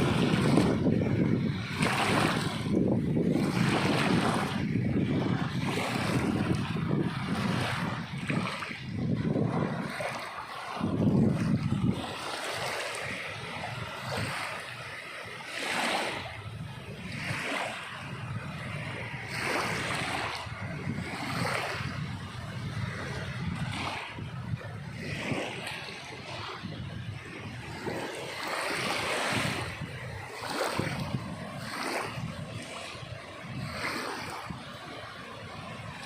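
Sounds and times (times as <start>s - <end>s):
sea waves breaking: 0.0s - 36.0s.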